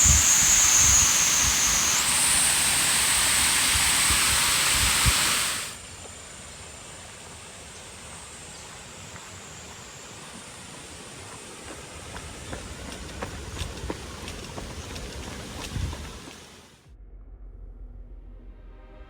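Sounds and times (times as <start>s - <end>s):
waterfall rushing: 0.0s - 13.6s.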